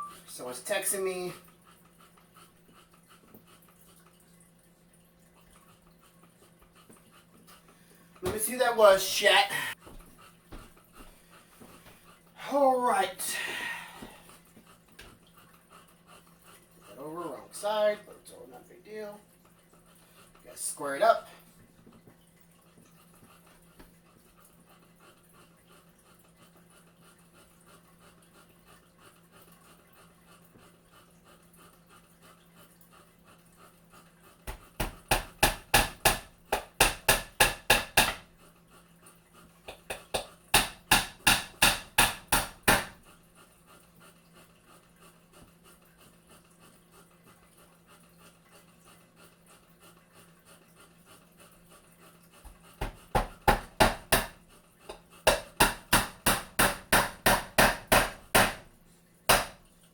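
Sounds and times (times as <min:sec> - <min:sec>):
hammer tapping a nail: 0:34.5 - 0:38.2, 0:39.7 - 0:43.0, 0:52.8 - 0:54.4, 0:55.3 - 0:58.6, 0:59.3 - 0:59.6.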